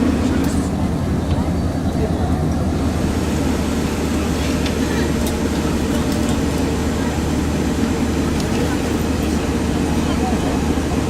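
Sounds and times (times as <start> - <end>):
constant hum: 0.0 - 11.0
engine and airflow rumble: 0.0 - 11.0.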